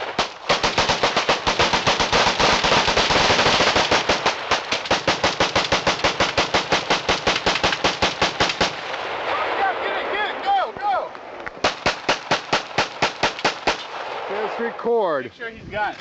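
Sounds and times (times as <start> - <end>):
rapid gunfire: 0.0 - 9.6, 11.6 - 14.5.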